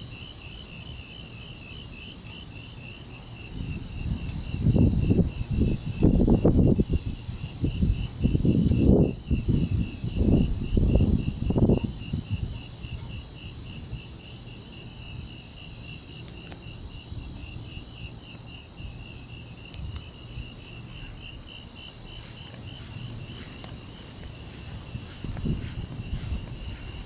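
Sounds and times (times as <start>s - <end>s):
crickets chirping: 0.0s - 27.0s
wind gust on microphone: 3.3s - 16.0s, 16.6s - 27.0s
low background rumble: 12.2s - 27.0s.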